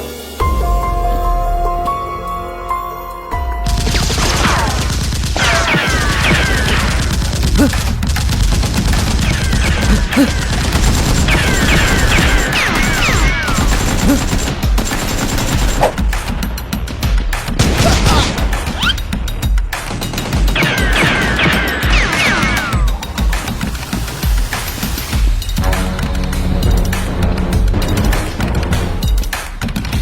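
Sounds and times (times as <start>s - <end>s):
bass-heavy music: 0.0s - 5.0s, 6.2s - 30.0s
automatic gunfire bursts: 3.9s - 16.1s.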